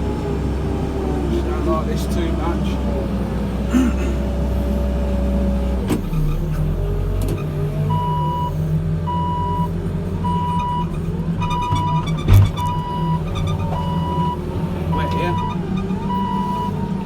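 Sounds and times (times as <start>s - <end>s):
diesel engine working: 0.0s - 17.0s
reversing alarm beeps: 7.9s - 10.9s, 11.5s - 16.8s
heavy thump: 11.4s - 14.3s.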